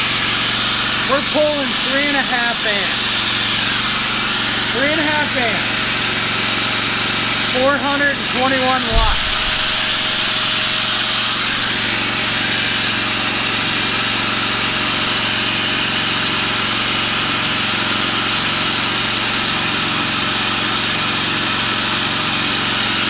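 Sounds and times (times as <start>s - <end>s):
generator engine hum: 8.9s - 11.8s.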